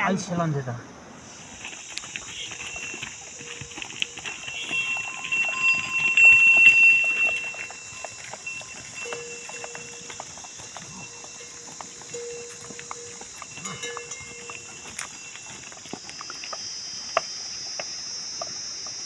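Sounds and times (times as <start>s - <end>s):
hoof clicks of livestock: 1.2s - 19.0s
steady high-pitched tone: 4.2s - 15.4s.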